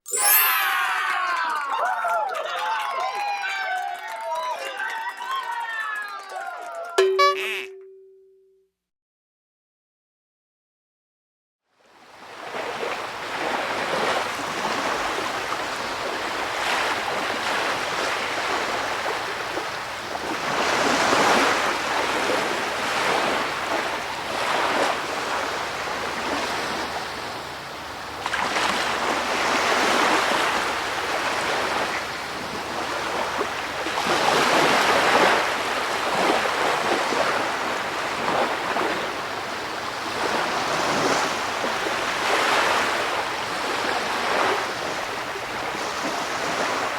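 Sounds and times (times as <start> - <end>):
ocean waves surf: 12.1 - 46.9.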